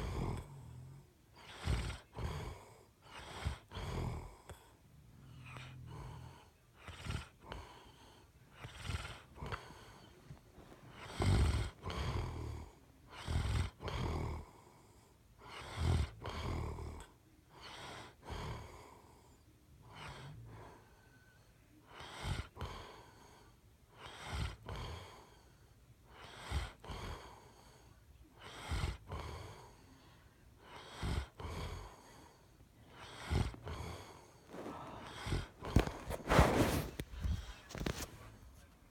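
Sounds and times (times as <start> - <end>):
person snoring: 8.6 - 14.5, 30.7 - 38.4.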